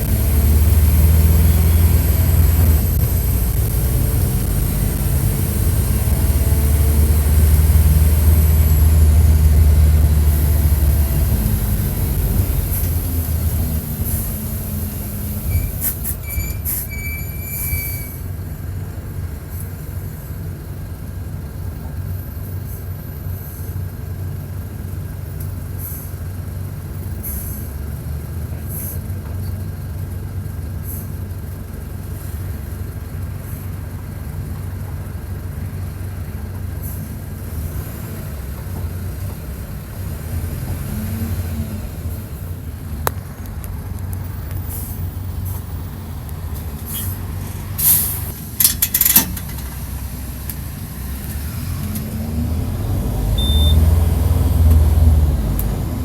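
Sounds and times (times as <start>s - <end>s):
high squeals and clicks: 0.0s - 18.2s
bus diesel engine running: 0.0s - 56.0s.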